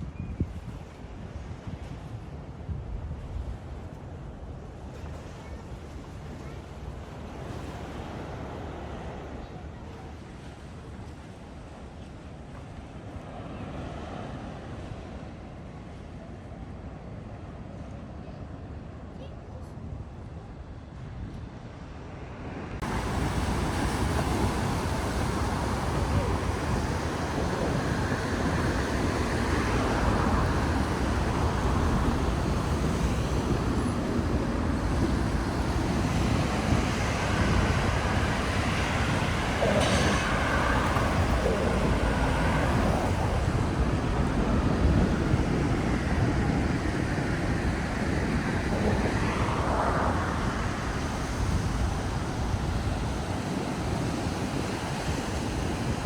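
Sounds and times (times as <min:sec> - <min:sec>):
moving vehicle rumble: 0:22.8 - 0:53.2.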